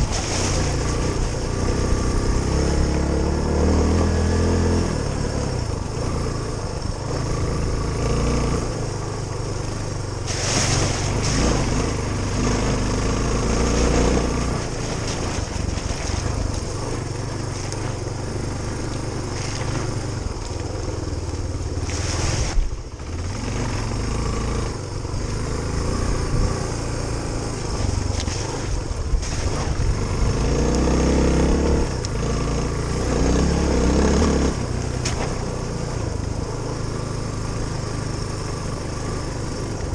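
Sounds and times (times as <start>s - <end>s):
motorcycle engine revving: 0.0s - 39.9s
rushes of hiss: 10.2s - 12.1s.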